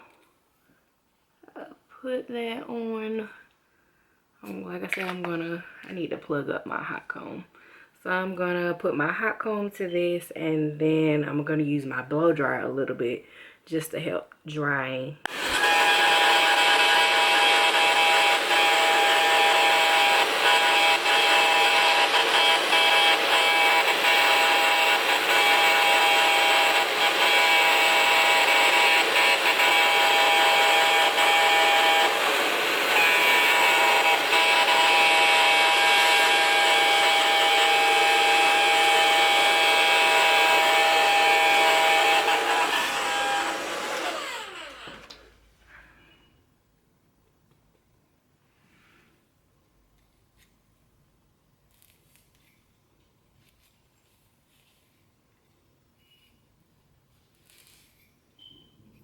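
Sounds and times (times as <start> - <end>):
blow dryer running: 15.3 - 45.4.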